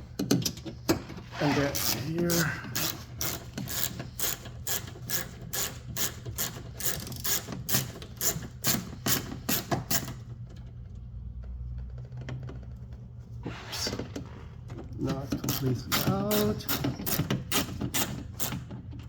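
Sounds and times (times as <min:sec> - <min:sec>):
ratchet clicking: 0:01.8 - 0:10.2, 0:15.4 - 0:18.7.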